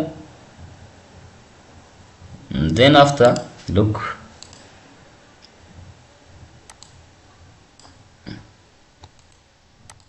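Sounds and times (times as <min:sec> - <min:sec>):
computer mouse clicking: 0:04.4 - 0:04.7, 0:06.6 - 0:07.0, 0:07.8 - 0:08.0, 0:09.0 - 0:10.0.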